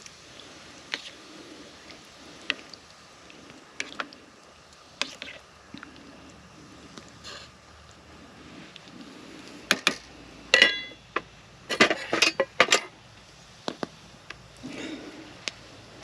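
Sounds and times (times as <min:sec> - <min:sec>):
utensils clinking on metal cookware: 0:10.6 - 0:11.0, 0:11.7 - 0:12.9.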